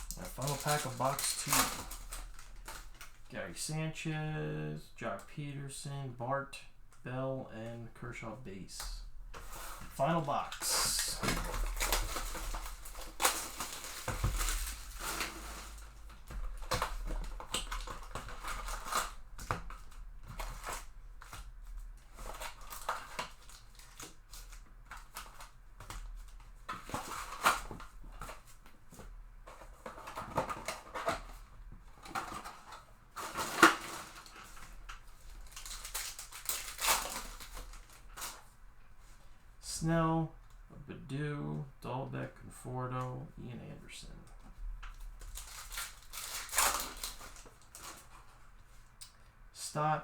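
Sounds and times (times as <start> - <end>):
shrink wrap and cardboard crinkling: 0.0 - 3.6, 8.8 - 38.6, 44.3 - 49.0.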